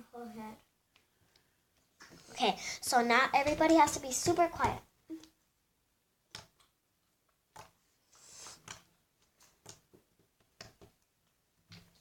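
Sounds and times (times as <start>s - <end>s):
soft slime squish: 0.0s - 12.0s.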